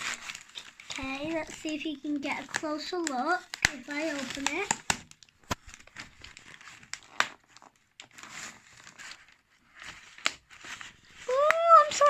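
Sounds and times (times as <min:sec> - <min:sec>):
packaging crinkling: 0:00.0 - 0:12.0
small clicks and taps: 0:00.6 - 0:05.8.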